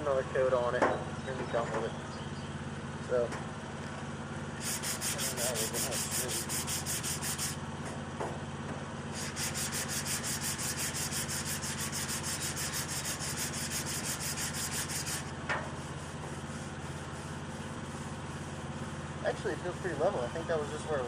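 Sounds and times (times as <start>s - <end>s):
steady low hum: 0.0s - 21.0s
sandpaper rubbing car panel: 4.6s - 7.6s, 9.1s - 19.0s.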